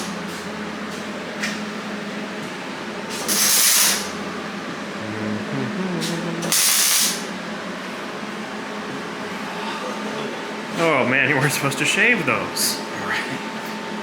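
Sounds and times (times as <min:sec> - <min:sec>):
low falling tone: 0:05.0 - 0:06.4
loud hissing sprays: 0:06.4 - 0:07.2.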